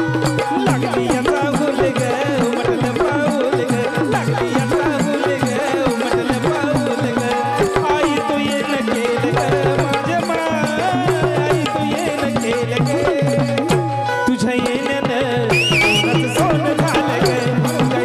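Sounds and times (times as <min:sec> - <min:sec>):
hand drums: 0:00.0 - 0:18.0
folk song melody: 0:13.7 - 0:18.0.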